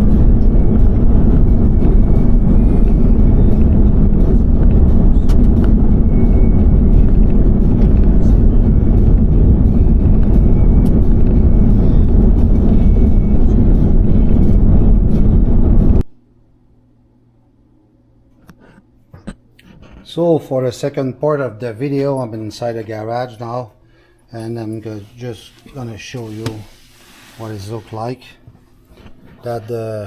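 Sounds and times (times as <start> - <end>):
truck engine and road noise: 0.0 - 16.0.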